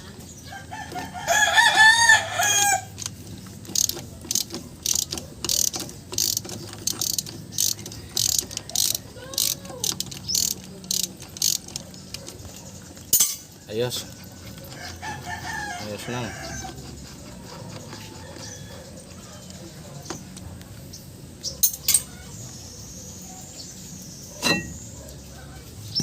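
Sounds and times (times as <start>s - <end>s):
rooster crowing: 0.4s - 3.0s, 14.7s - 16.9s, 17.5s - 19.4s
ratchet wrench clicking: 2.5s - 12.4s.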